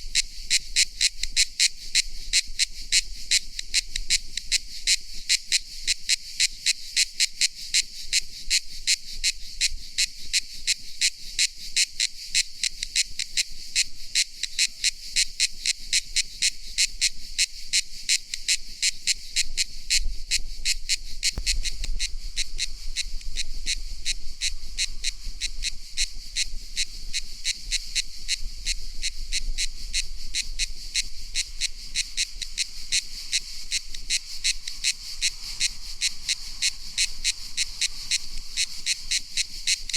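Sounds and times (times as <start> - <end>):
cicada buzzing: 10.4 - 39.9.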